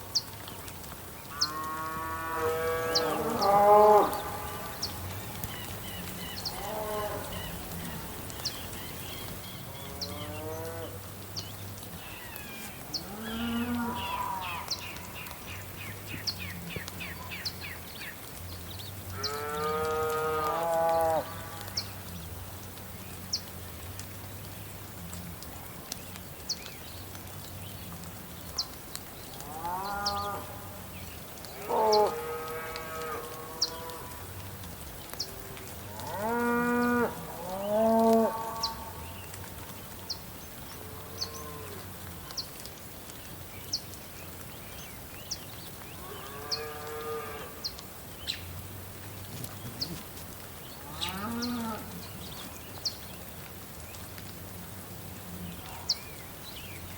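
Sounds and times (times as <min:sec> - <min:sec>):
steady rain: 0:00.0 - 0:56.9
cows mooing: 0:01.4 - 0:04.8, 0:06.5 - 0:07.4, 0:13.0 - 0:14.7, 0:19.2 - 0:21.7, 0:31.5 - 0:34.2, 0:35.9 - 0:39.0, 0:46.0 - 0:47.6, 0:50.9 - 0:52.0.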